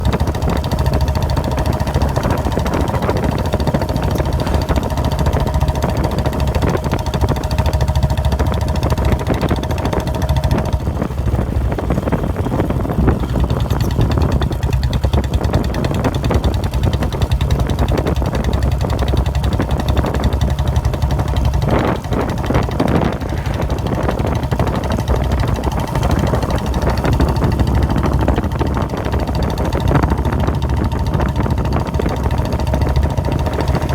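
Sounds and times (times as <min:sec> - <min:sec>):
motorcycle engine thumping: 0:00.0 - 0:33.9.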